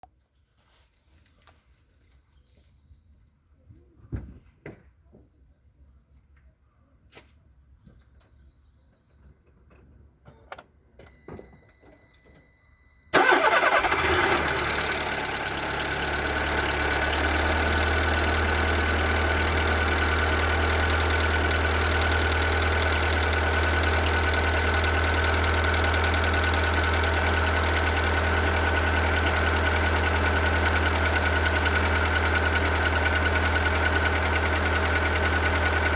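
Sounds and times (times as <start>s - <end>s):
car engine starting and idling: 13.1s - 35.9s
engine knock: 13.2s - 35.9s.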